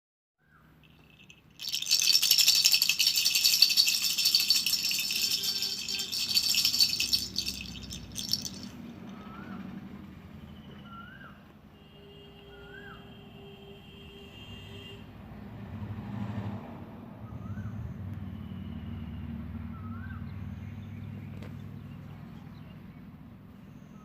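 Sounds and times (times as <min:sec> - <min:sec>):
baby rattle shaken: 0:00.8 - 0:09.2.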